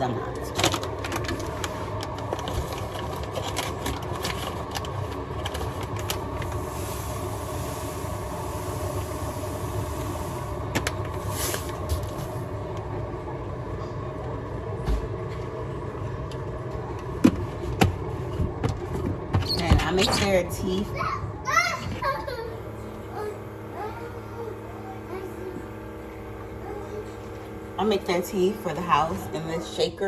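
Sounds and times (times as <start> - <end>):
coffee maker pump hum: 0.0 - 30.0.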